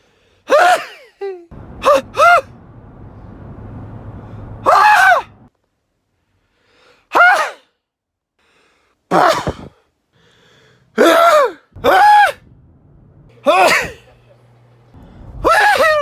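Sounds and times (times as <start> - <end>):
person sneezing: 0.5 - 1.1, 7.1 - 7.7, 9.1 - 9.8, 11.0 - 12.1, 13.4 - 14.1.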